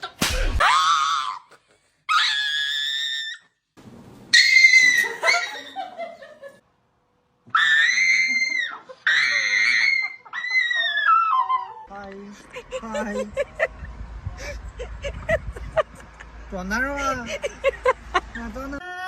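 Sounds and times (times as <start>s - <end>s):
dog screaming cries: 4.3s - 5.6s, 7.5s - 11.9s.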